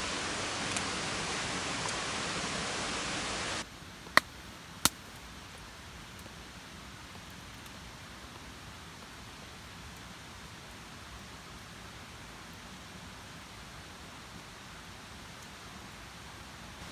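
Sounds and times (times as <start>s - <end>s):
sharp pops: 4.1s - 5.3s.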